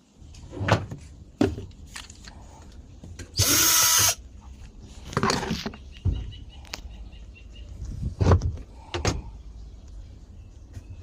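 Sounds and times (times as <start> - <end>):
power drill burst: 3.4 - 4.2.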